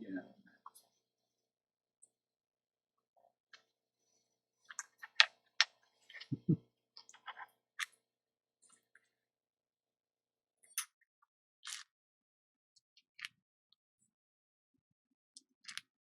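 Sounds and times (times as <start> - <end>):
small parts clicking: 11.6 - 11.9.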